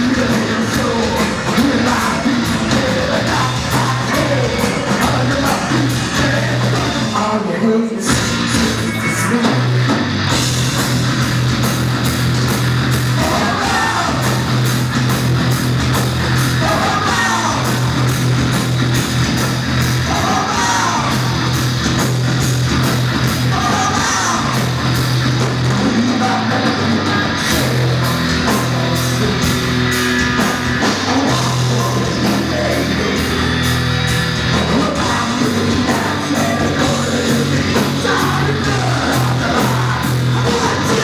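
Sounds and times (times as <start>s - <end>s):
person singing: 0.0s - 9.8s, 13.1s - 14.6s, 16.5s - 18.1s, 20.0s - 21.4s, 23.4s - 25.0s, 30.4s - 33.7s, 34.6s - 41.0s
heavy rock band playing: 0.0s - 41.0s.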